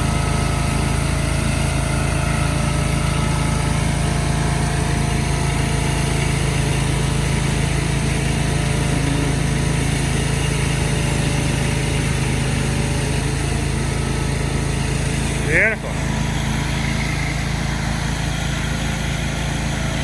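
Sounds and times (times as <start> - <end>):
small engine humming: 0.0 - 20.0.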